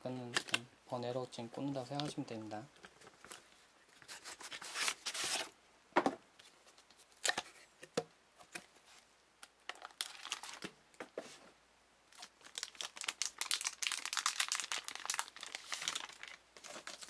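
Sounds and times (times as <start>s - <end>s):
plastic packaging crinkling: 9.7s - 10.7s, 12.1s - 17.0s.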